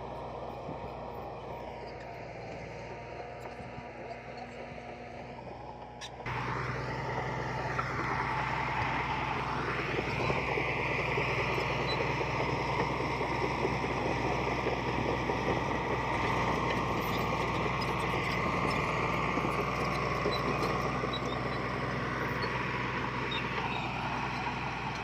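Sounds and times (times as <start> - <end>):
heavy machinery diesel engine: 0.0 - 25.0.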